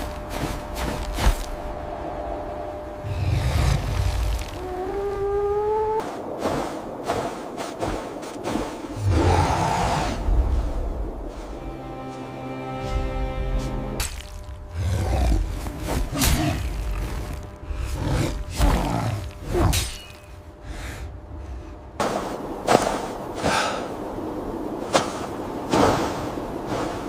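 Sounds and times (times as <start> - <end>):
steady rushing noise: 0.0 - 27.0
deep animal growls and roars: 3.0 - 6.0, 9.0 - 10.9, 14.7 - 19.8.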